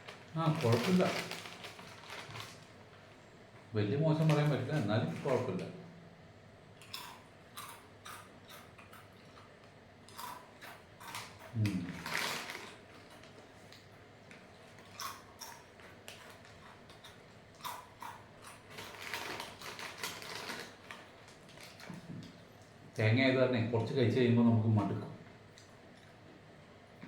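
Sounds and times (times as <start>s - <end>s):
crunchy snacks being chewed: 0.0s - 2.8s, 6.8s - 22.2s.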